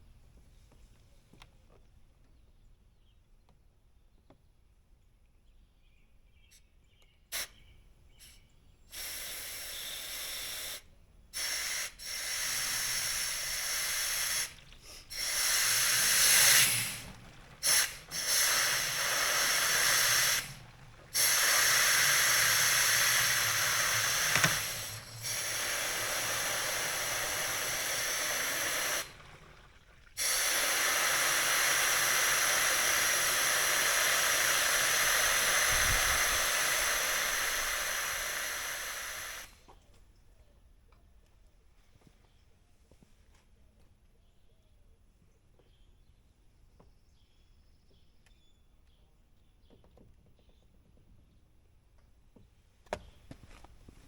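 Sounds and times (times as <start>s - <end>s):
compressed air hissing: 7.3s - 29.6s, 30.2s - 39.6s.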